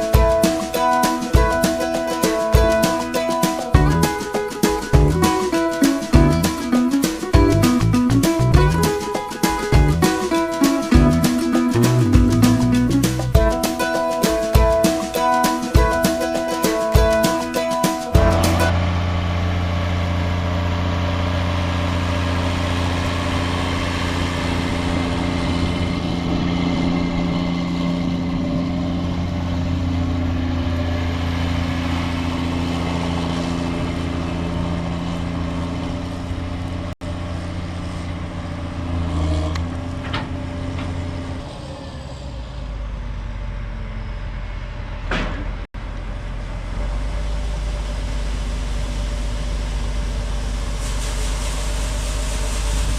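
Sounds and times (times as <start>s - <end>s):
harvest machinery engine drone: 18.1s - 52.9s.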